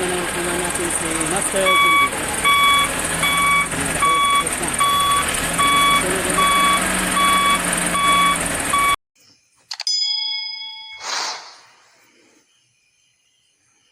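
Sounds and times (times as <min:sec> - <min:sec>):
diesel engine running: 0:00.0 - 0:09.0
backup alarm beeping: 0:01.4 - 0:09.0
short electronic chime: 0:09.8 - 0:11.7
whoosh: 0:11.0 - 0:12.0.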